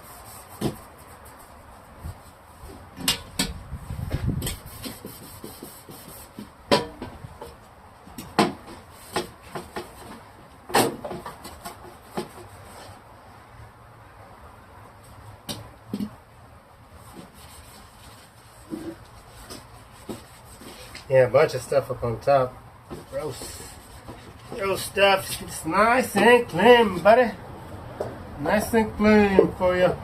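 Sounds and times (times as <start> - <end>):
knocks and clatters of parts: 2.9 - 3.6, 6.4 - 12.5
scrubbing rubbing: 17.0 - 21.1.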